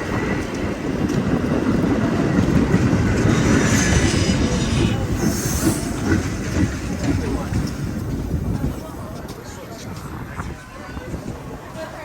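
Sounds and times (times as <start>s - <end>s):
train wheels clattering on rails: 0.0s - 9.6s
train rumbling: 0.0s - 10.3s.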